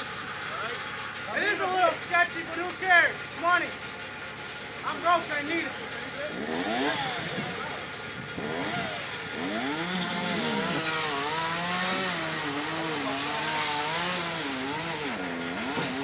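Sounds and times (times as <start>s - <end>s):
chainsaw cutting tree trunk: 6.3s - 16.0s.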